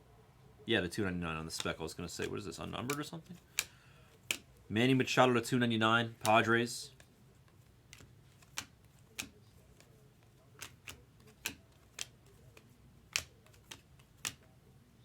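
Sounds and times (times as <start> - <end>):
trading cards flipped clicking: 1.6 - 4.5, 6.2 - 7.1, 7.8 - 14.5.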